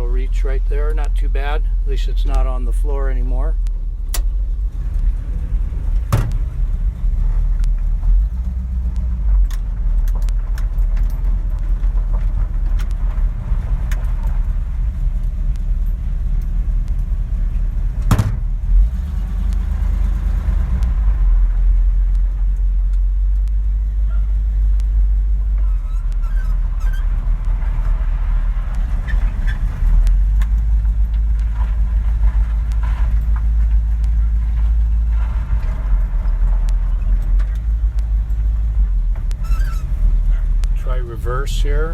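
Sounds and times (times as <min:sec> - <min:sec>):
truck engine idling: 0:00.0 - 0:41.9
sharp clunks: 0:06.0 - 0:06.6, 0:18.0 - 0:18.6.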